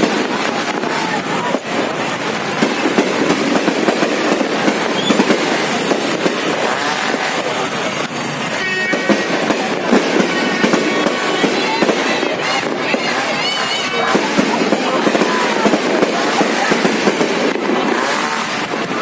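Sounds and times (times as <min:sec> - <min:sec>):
fireworks crackling and banging: 0:00.0 - 0:19.0.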